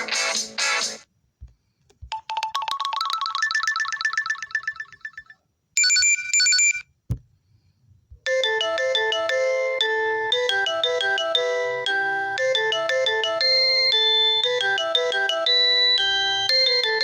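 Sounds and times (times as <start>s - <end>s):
chiming ringtone melody: 2.1s - 6.8s, 8.3s - 17.0s.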